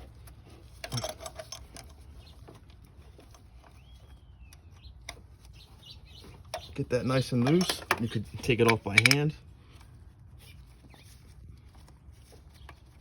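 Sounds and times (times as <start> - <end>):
faint bird chirp: 2.0 - 7.0, 10.4 - 11.4.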